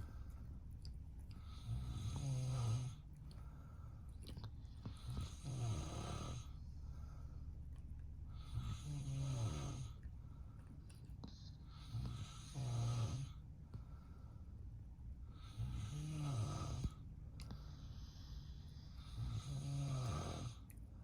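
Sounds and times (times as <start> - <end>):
quiet breathing: 0.0 - 21.0
man snoring: 1.5 - 3.0, 5.0 - 6.5, 8.4 - 10.0, 11.9 - 13.4, 15.4 - 17.0, 19.0 - 20.6.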